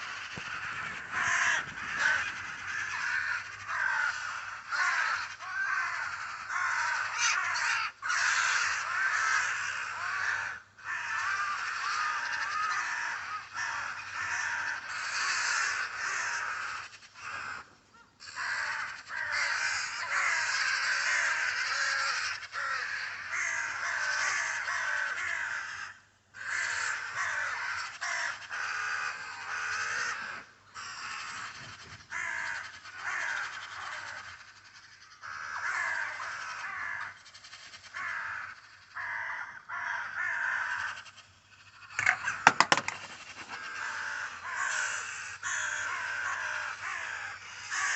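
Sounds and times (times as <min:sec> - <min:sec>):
birds harsh crow-like calls: 0:00.0 - 0:47.9
sharp clicks: 0:42.0 - 0:43.6.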